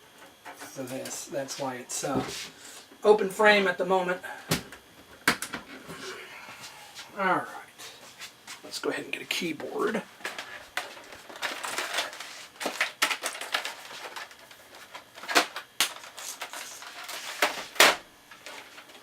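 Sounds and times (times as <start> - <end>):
keyboard and cables rustling: 9.6 - 19.0.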